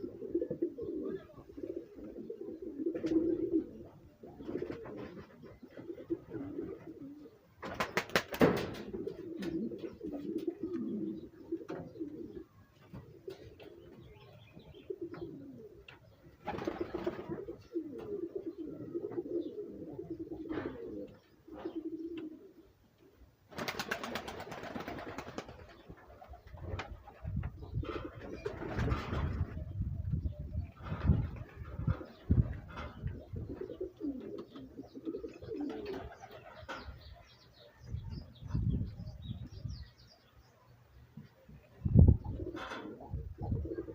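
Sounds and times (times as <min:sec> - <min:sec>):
pigeons cooing: 0:00.0 - 0:43.9
rapid wingbeats: 0:23.5 - 0:26.9.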